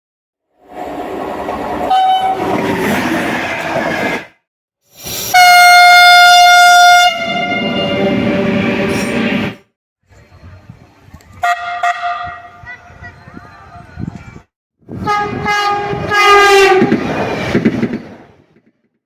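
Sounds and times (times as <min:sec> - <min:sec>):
train passing: 0:00.6 - 0:04.3, 0:05.0 - 0:09.6, 0:14.9 - 0:18.7
train horn blast: 0:01.9 - 0:02.4, 0:05.3 - 0:09.6, 0:11.4 - 0:12.6, 0:15.0 - 0:16.9.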